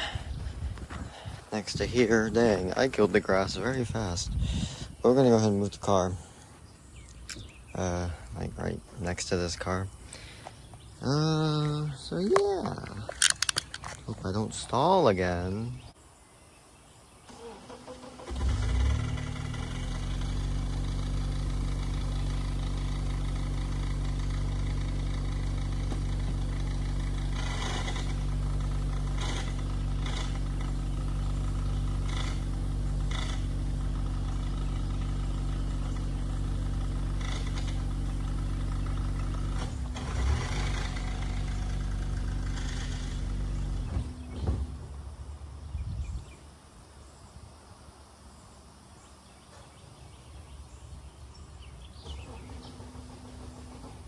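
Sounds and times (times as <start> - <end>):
car engine starting and running: 0.0 - 15.9, 17.1 - 46.7, 50.3 - 54.0
knocks and clunks: 25.8 - 26.8, 39.2 - 45.6, 52.0 - 54.0
thumps: 41.2 - 45.4.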